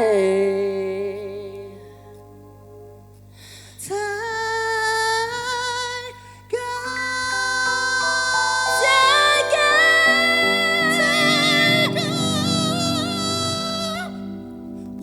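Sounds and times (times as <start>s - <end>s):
singer holding long note: 6.7s - 14.6s.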